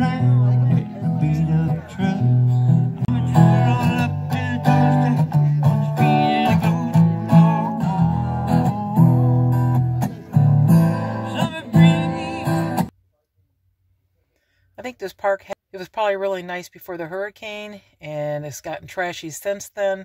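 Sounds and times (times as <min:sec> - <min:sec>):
strummed acoustic guitar music: 0:00.0 - 0:12.9.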